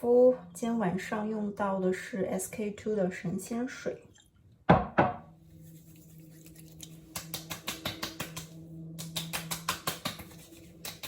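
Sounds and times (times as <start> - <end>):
fingertips tapping skin: 6.5 - 11.0.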